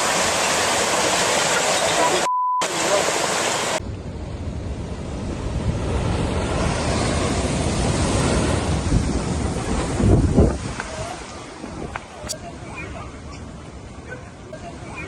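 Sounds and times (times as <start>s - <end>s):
rough surf rushing: 0.0s - 15.0s
wind buffeting microphone: 3.9s - 12.7s.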